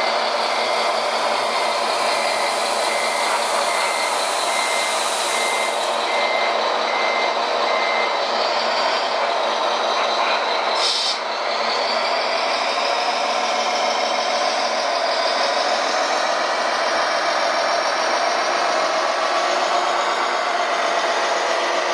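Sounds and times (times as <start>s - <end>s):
reversing beeper: 0.0s - 9.2s
short hiss: 2.1s - 6.1s.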